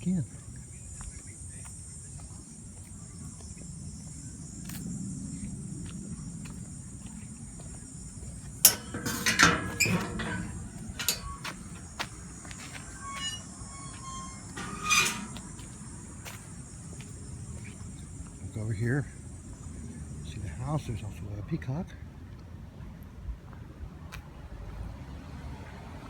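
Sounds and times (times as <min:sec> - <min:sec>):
insects droning: 0:00.0 - 0:22.0
loud sharp knocks and scrapes: 0:08.6 - 0:11.8, 0:12.5 - 0:15.7.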